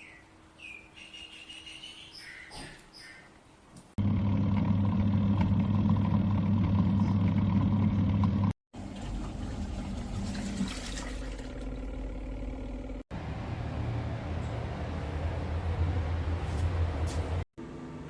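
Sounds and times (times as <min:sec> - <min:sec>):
washing machine motor humming: 0:04.0 - 0:16.4
low motor rumbling: 0:04.0 - 0:17.5.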